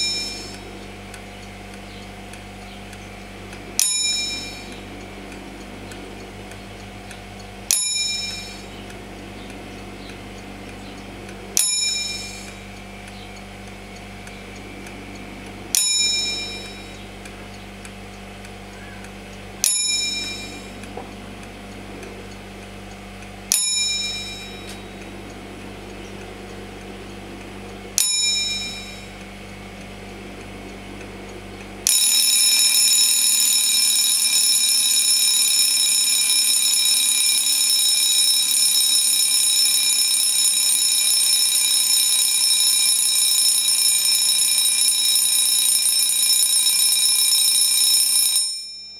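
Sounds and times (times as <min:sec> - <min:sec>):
alarm clock bell ringing: 0:00.0 - 0:00.7, 0:03.8 - 0:04.9, 0:07.7 - 0:08.8, 0:11.6 - 0:12.7, 0:15.8 - 0:17.0, 0:19.6 - 0:20.9, 0:23.5 - 0:25.0, 0:28.0 - 0:29.2, 0:31.9 - 0:48.9.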